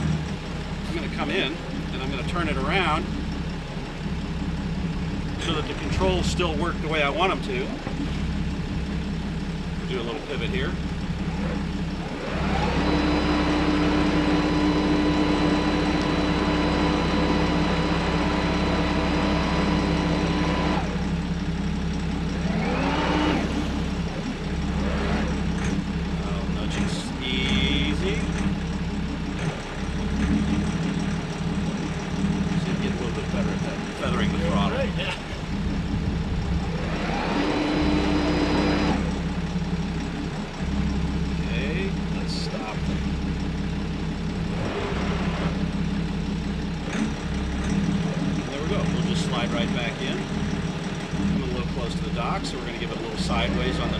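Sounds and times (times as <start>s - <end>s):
boat engine idling: 0.0s - 53.9s
thruster motor whining: 0.0s - 53.9s
boat thrusters whining: 22.1s - 28.6s, 31.6s - 39.3s.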